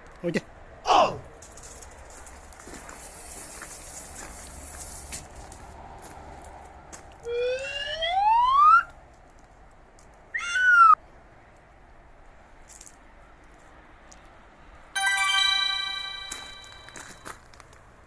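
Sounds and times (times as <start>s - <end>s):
bright ringing chime: 15.0s - 17.3s.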